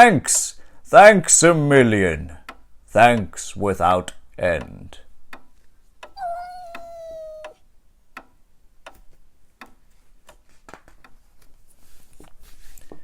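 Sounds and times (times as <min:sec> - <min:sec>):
sharp ticking clicks: 0:05.4 - 0:07.6
held tone: 0:06.2 - 0:07.6.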